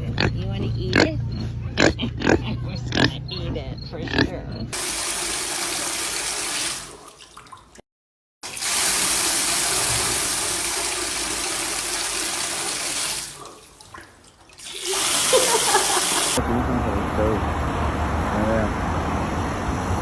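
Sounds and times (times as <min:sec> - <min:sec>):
running water rushing: 0:04.8 - 0:07.8, 0:08.4 - 0:16.4.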